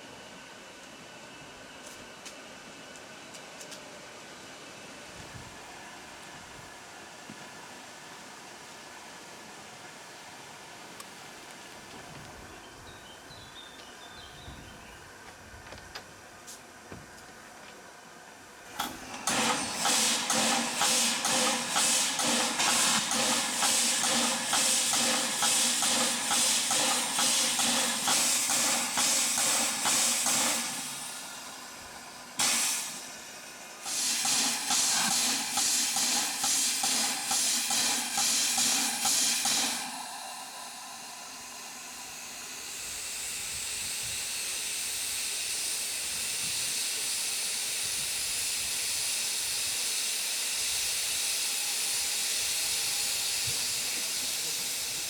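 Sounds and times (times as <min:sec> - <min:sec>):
steam hissing: 0:18.7 - 0:55.0.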